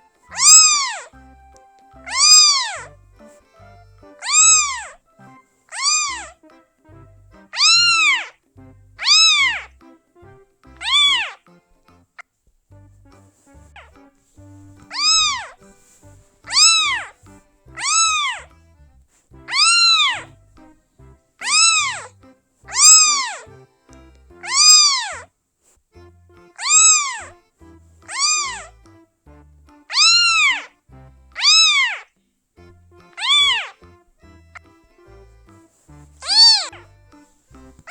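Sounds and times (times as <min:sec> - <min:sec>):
faint background music: 0:00.0 - 0:37.9
kitten meowing: 0:00.3 - 0:05.0, 0:05.7 - 0:06.4, 0:07.4 - 0:08.4, 0:09.0 - 0:09.7, 0:10.8 - 0:11.4, 0:14.7 - 0:15.6, 0:16.5 - 0:17.2, 0:17.8 - 0:18.5, 0:19.5 - 0:20.3, 0:21.4 - 0:22.1, 0:22.7 - 0:23.5, 0:24.4 - 0:25.2, 0:26.5 - 0:27.4, 0:28.1 - 0:28.7, 0:29.9 - 0:30.7, 0:31.4 - 0:32.1, 0:33.1 - 0:37.9.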